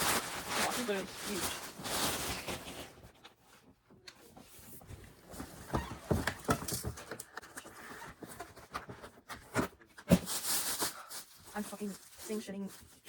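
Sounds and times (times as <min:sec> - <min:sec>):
wrapping rustling: 0:00.0 - 0:03.4, 0:10.2 - 0:13.0.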